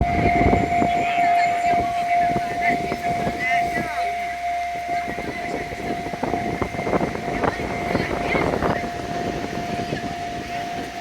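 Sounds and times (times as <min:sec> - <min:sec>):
crowd voices chattering: 0:00.0 - 0:11.0
level crossing warning bell: 0:00.0 - 0:11.0.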